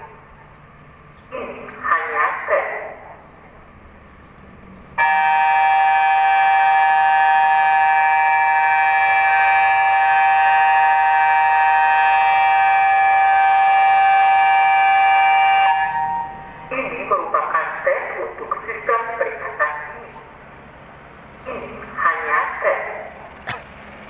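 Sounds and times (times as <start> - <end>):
steady multi-pitch warning siren: 5.0 - 16.7.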